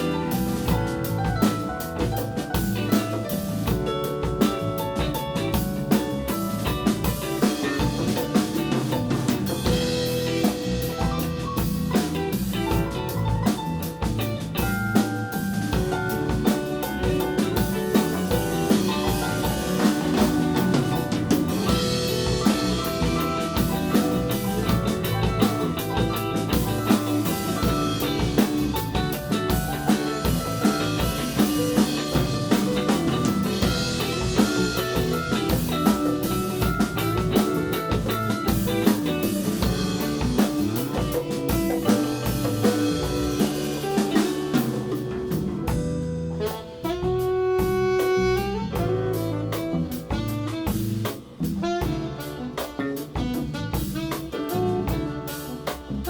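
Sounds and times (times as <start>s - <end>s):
live band playing: 0.0s - 56.0s.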